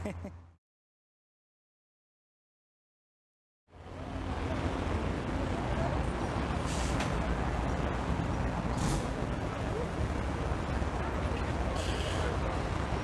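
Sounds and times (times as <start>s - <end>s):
street traffic rumble: 3.7s - 13.0s.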